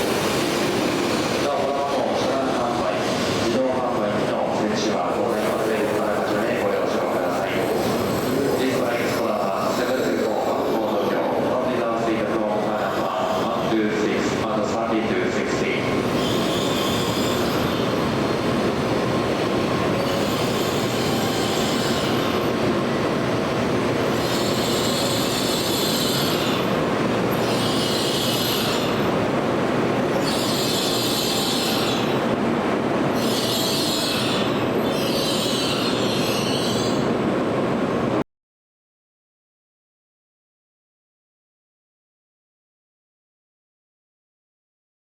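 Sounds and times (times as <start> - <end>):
train rumbling: 0.0 - 38.2
high-pitched squealing hiss: 33.2 - 37.0.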